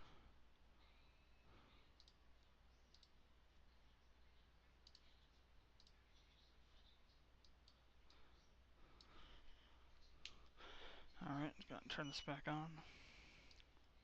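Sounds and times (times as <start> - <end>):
computer mouse clicks: 1.8 - 3.2, 4.7 - 9.2, 13.4 - 14.0.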